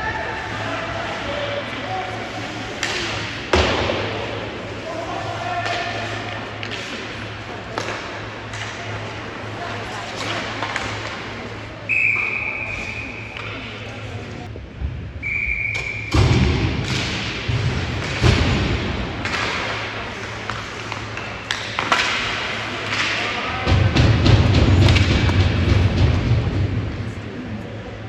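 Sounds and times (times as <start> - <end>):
hockey sticks and puck knocking: 2.7 - 4.2, 5.6 - 9.0, 10.1 - 11.3, 16.1 - 26.2
referee's whistle: 11.9 - 13.3, 15.2 - 16.2
steady low hum: 12.8 - 28.0.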